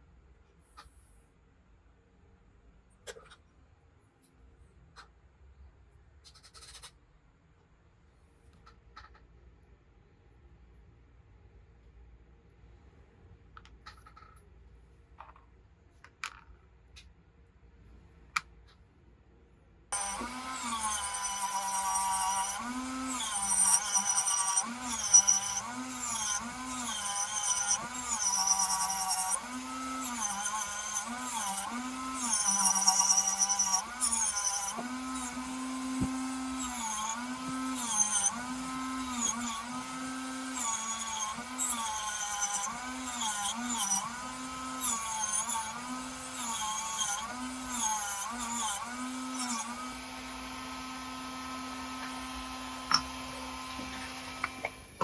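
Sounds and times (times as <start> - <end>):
rotary tool whining: 19.9 - 54.9.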